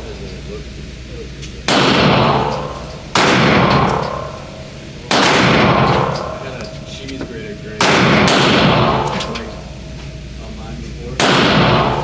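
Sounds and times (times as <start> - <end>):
pistol shots with ringing tail: 1.6 - 6.4, 7.8 - 9.6, 11.2 - 12.0.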